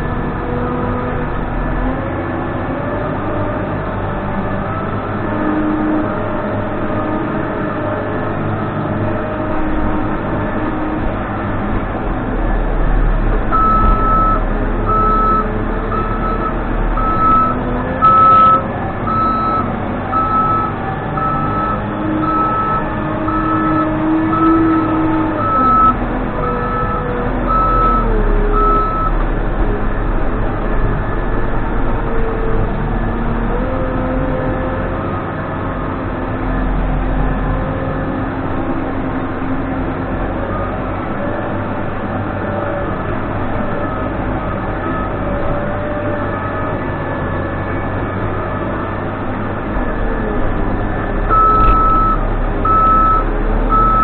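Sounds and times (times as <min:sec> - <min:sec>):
backhoe diesel engine running: 0:00.0 - 0:54.0
reverse alarm beeping: 0:13.6 - 0:19.6, 0:51.3 - 0:54.0.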